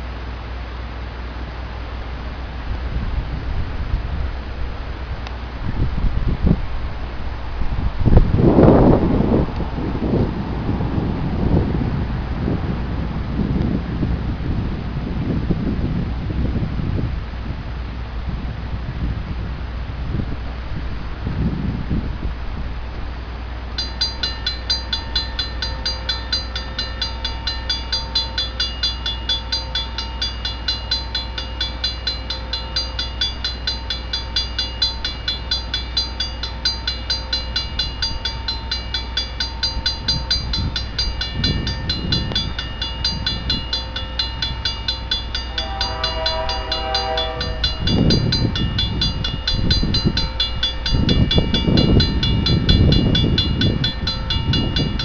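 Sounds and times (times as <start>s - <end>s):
train rumble: 0.0s - 55.0s
level-crossing warning bell: 23.4s - 55.0s
locomotive horn: 44.4s - 49.2s.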